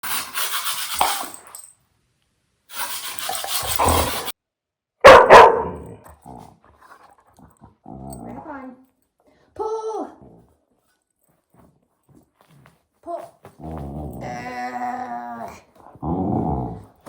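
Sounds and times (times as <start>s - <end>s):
hissy rasping noise: 2.7s - 4.3s
puppy barking: 5.0s - 6.0s.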